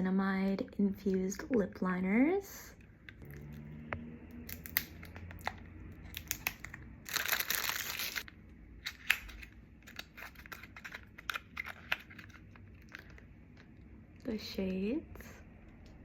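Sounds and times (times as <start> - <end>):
packaging crinkling: 4.4 - 13.3.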